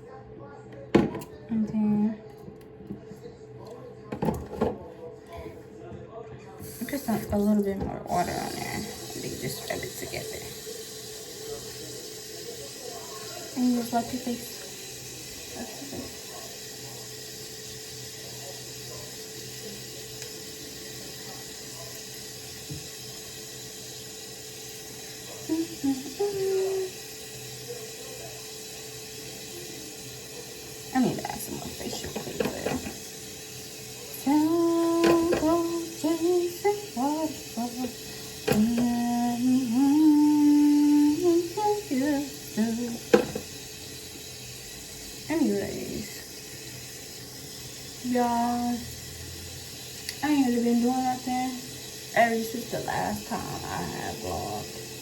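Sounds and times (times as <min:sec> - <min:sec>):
tap running into sink: 0:00.9 - 0:01.3, 0:04.1 - 0:04.8, 0:21.8 - 0:23.1, 0:31.4 - 0:33.2, 0:34.6 - 0:36.2, 0:37.3 - 0:41.1, 0:42.6 - 0:43.6.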